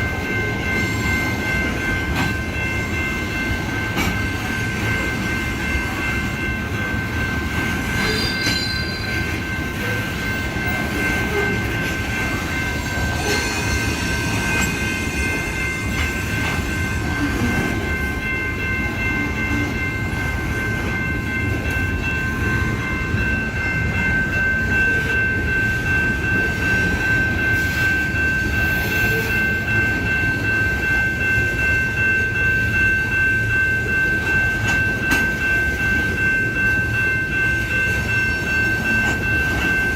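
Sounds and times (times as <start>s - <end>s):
freight train rumble: 0.0s - 39.9s
wheel squeal: 8.0s - 9.1s.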